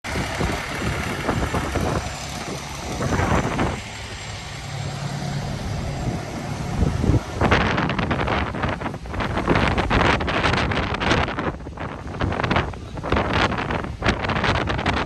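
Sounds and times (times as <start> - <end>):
engine idling: 0.0 - 14.8
rushing noise: 0.0 - 15.0.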